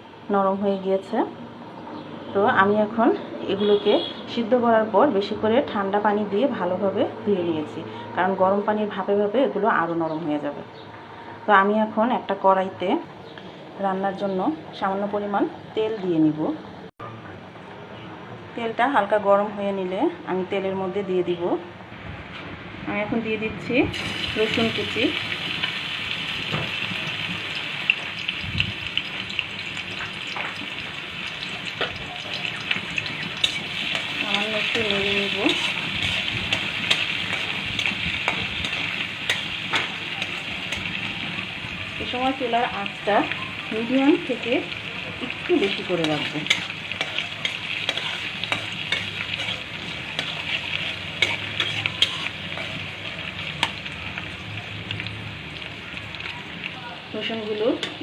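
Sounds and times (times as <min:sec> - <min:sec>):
garlic sizzling in oil: 0:23.9 - 0:58.0.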